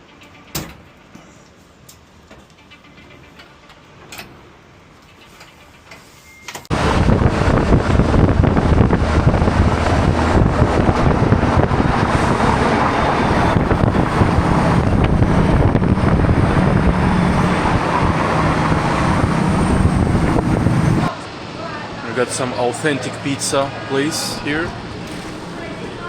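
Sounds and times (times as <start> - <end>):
loud road traffic: 6.7 - 26.0.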